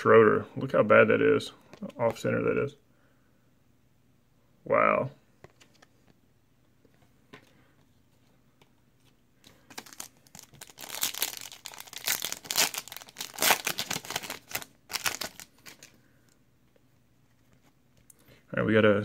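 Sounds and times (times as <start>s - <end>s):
foil wrapper tearing and crinkling: 9.7s - 15.9s.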